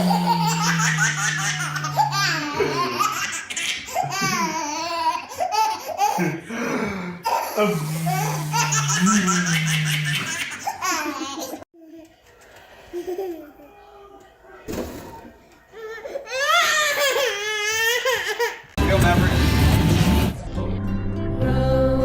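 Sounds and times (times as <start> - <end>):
baby laughing: 0.0 - 6.4, 7.2 - 11.6.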